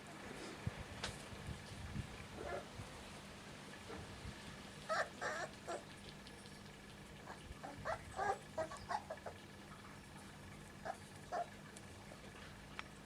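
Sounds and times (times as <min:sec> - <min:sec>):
puppies whimpering and squeaking: 0:04.9 - 0:05.8, 0:07.3 - 0:09.4, 0:10.8 - 0:11.6.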